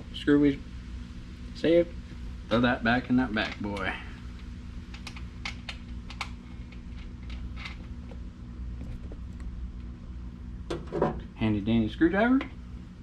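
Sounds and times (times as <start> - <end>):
steady low hum: 0.0 - 13.0
small screw clicks and taps: 3.4 - 8.2.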